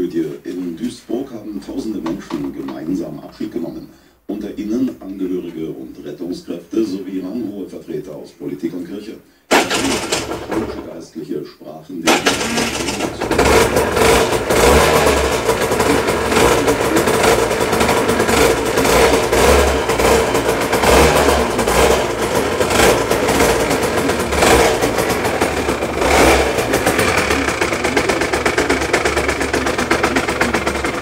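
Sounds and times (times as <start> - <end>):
two-stroke engine revving: 9.5 - 10.9, 12.0 - 31.0.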